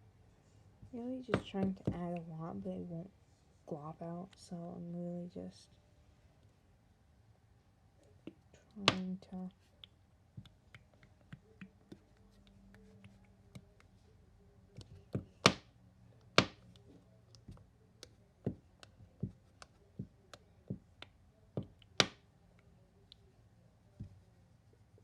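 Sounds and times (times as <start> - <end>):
nail polish bottle tapping: 14.8 - 15.6, 16.4 - 16.6, 18.5 - 22.2.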